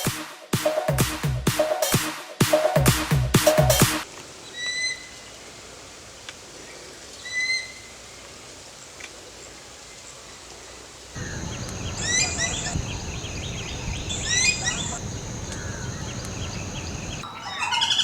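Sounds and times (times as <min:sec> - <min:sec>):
outdoor background noise: 0:03.5 - 0:18.0
bird whistled notes: 0:11.2 - 0:18.0.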